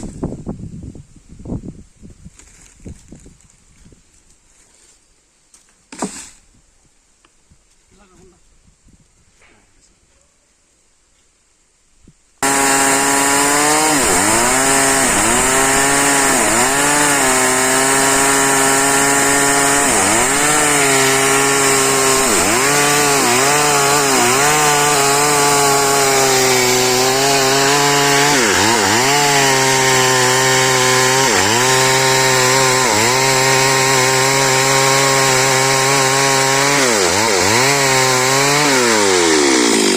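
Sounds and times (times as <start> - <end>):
chainsaw cutting wood: 5.9 - 6.4, 12.4 - 39.9.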